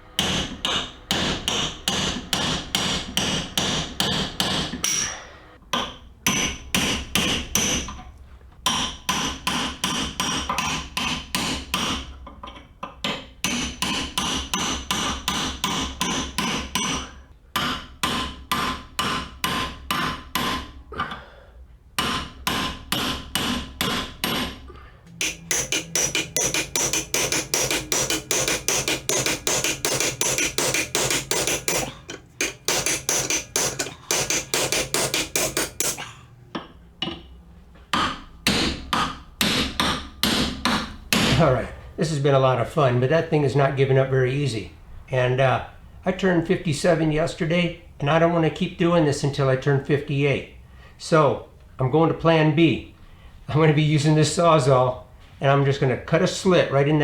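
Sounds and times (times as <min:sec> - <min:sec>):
hammer blows on metal: 0:22.0 - 0:36.2.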